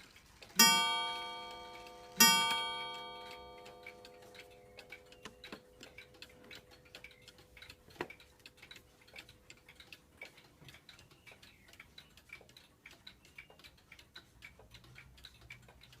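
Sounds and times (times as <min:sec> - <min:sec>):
clock ticking: 0:00.0 - 0:16.0
clock strike note: 0:00.6 - 0:05.2.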